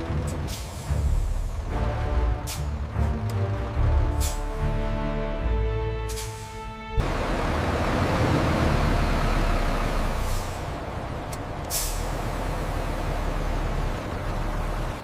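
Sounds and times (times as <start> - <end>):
music: 0.0 - 7.3
industrial machinery rumbling: 0.0 - 15.0.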